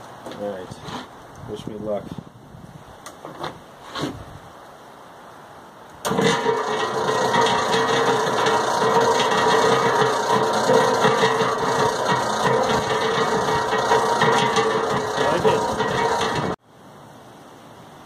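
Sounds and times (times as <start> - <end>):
cement mixer drum running: 6.1 - 16.6.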